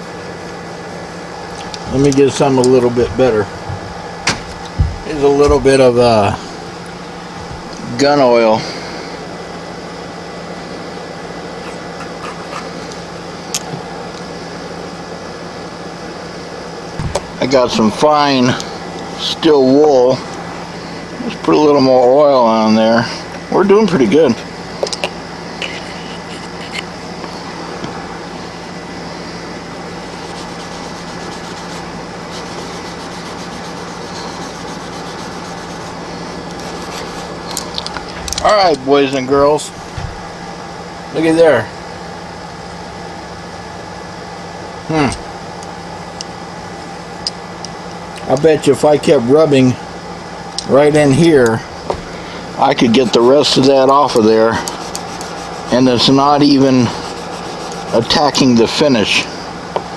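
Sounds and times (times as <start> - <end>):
steady background hum: 0.0 - 59.9
steel wool rubbing on blade: 30.0 - 37.6, 54.1 - 58.4.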